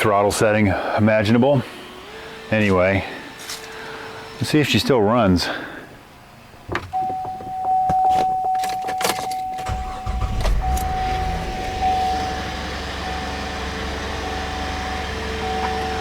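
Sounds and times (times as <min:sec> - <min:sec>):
car engine starting and idling: 0:06.0 - 0:16.0
steady high tone: 0:07.0 - 0:16.0
keys jangling: 0:08.1 - 0:09.7.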